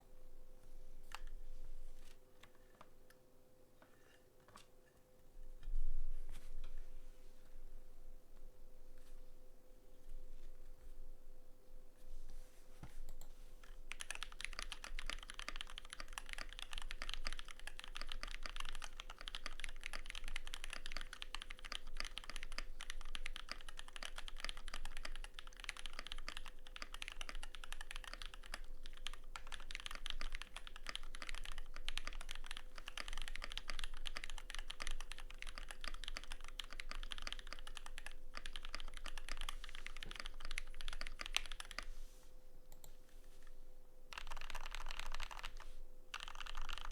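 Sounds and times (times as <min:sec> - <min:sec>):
fast mechanical keyboard typing: 0:13.6 - 0:41.9, 0:44.1 - 0:46.9.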